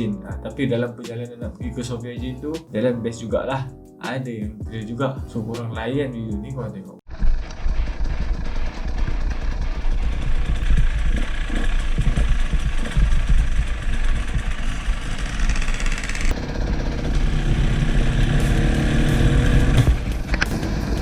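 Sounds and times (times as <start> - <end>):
wind noise on microphone: 7.1 - 16.2
motorcycle engine revving: 7.1 - 21.0.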